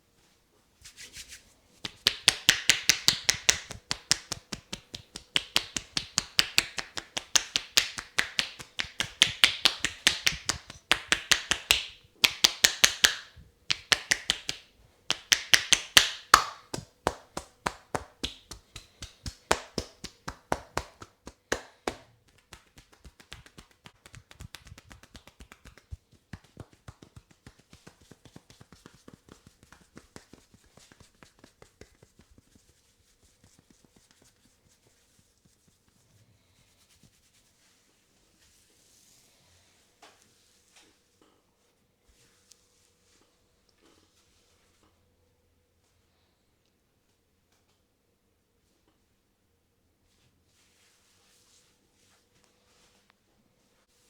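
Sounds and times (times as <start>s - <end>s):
fingers clicking on head: 1.9s - 29.0s.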